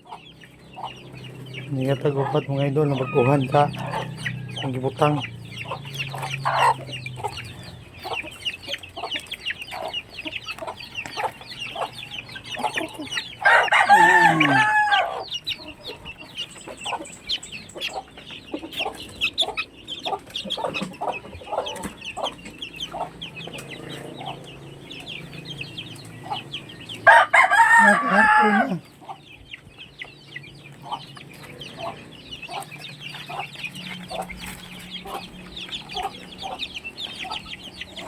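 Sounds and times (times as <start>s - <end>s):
chickens clucking: 0.0s - 38.0s
rooster crowing: 2.9s - 7.4s, 13.4s - 15.3s, 27.0s - 28.8s.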